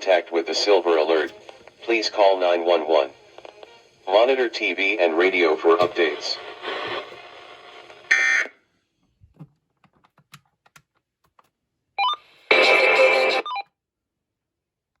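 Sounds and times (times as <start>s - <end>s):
person speaking alert: 0.0s - 3.1s, 4.1s - 6.4s.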